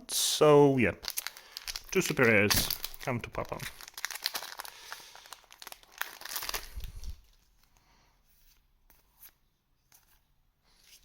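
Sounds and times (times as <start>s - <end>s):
wrapper crinkling and tearing: 1.0s - 7.7s.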